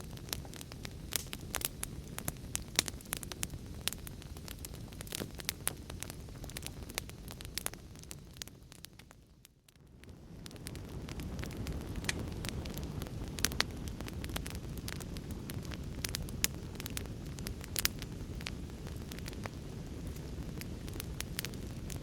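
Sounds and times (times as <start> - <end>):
fire crackling and popping: 0.0 - 22.0.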